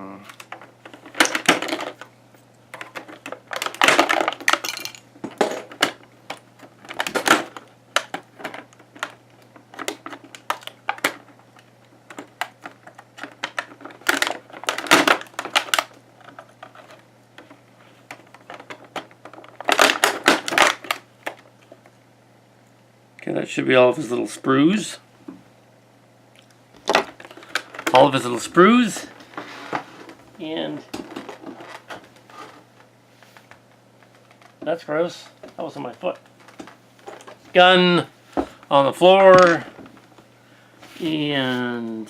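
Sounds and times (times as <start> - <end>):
crinkly plastic rustling: 2.7 - 21.9, 26.8 - 37.8.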